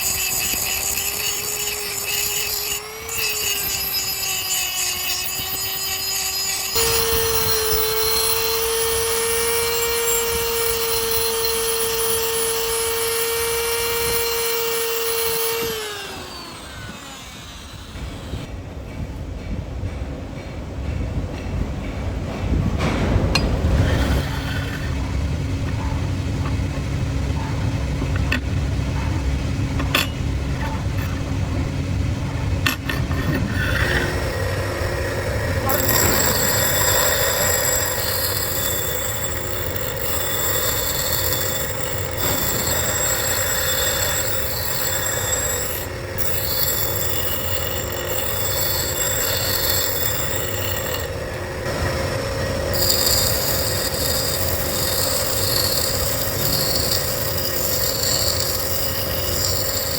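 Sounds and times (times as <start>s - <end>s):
high squealing grinding whine: 0.0s - 18.5s, 23.3s - 59.9s
power tool motor rumble: 0.0s - 18.5s, 32.5s - 59.9s.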